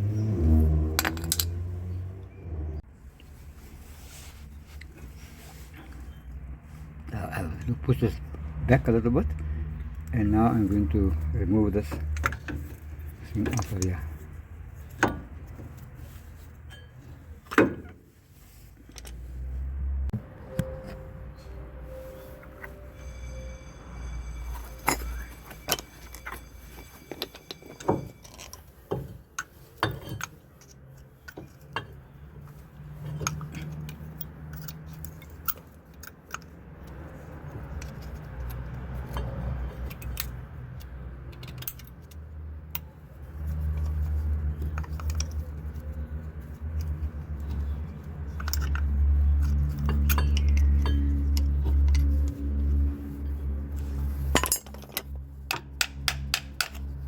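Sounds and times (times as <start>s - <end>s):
metal tools clinking: 1.0s - 1.7s, 10.1s - 17.8s, 24.4s - 32.1s, 43.6s - 56.9s
low steady rumble: 18.1s - 28.9s.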